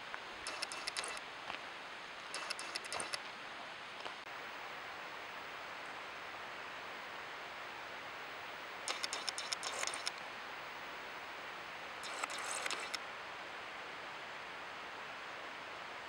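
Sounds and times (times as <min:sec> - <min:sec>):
crackling rustle: 0:12.0 - 0:13.0.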